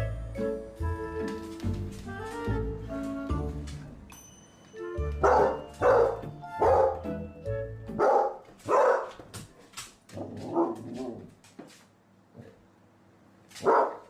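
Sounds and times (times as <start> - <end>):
puppy barking: 5.2 - 7.2, 8.0 - 9.3, 10.3 - 11.2, 13.6 - 14.0.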